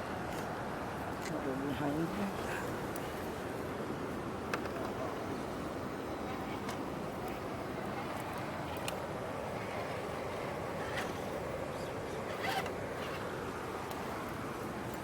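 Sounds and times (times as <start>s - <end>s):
river water rushing: 5.2s - 15.0s.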